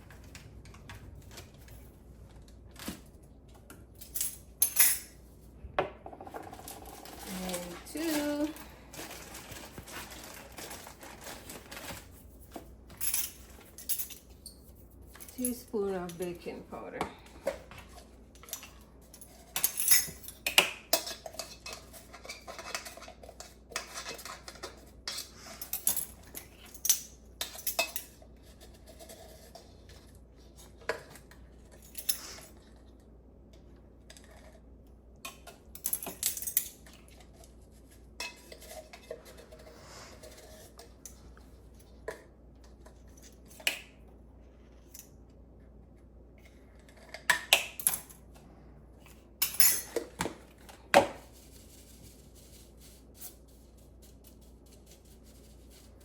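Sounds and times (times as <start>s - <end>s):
spoons clinking against bowls: 19.5s - 26.1s.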